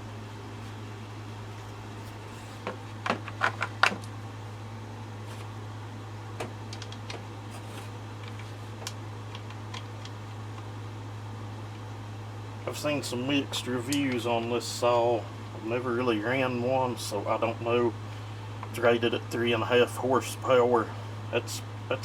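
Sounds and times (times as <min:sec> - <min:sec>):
low hum: 0:00.0 - 0:22.0
sharp clicks and knocks: 0:06.4 - 0:07.3.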